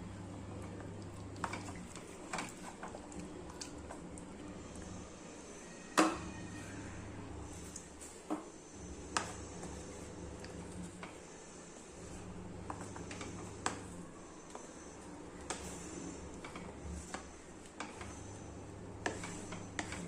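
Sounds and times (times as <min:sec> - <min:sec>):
steady low hum: 0:00.0 - 0:05.6.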